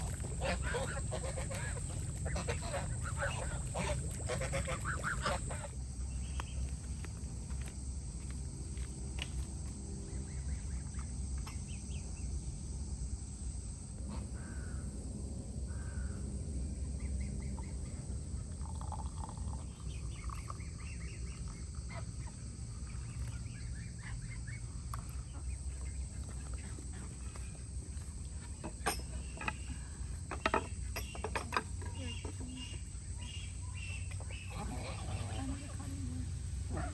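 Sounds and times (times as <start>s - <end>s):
birds chirping: 0.0s - 7.0s, 18.7s - 36.9s
steady low rumble: 0.0s - 10.9s
caw-like bird calls: 14.4s - 14.8s, 15.7s - 16.2s.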